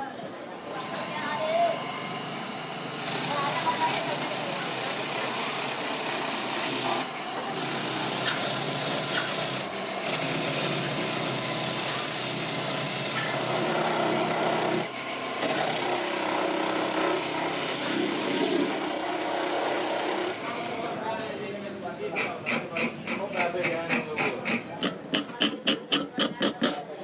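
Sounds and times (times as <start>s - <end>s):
tool buffing tire rubber: 7.8s - 9.6s, 17.0s - 20.4s, 24.5s - 27.0s.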